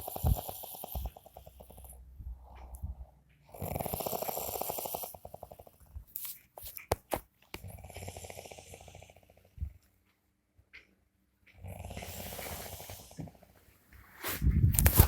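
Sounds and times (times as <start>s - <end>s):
loud rattling snore: 0.0s - 2.0s, 3.5s - 5.9s, 7.6s - 9.6s, 11.6s - 13.5s
quiet breathing: 0.0s - 6.2s, 7.6s - 9.8s, 11.6s - 14.5s.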